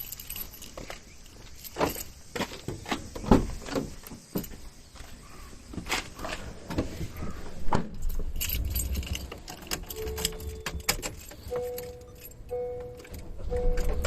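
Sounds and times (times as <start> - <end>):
keys jangling: 0.0 - 2.2, 8.0 - 14.0
electronic beep: 9.9 - 14.0.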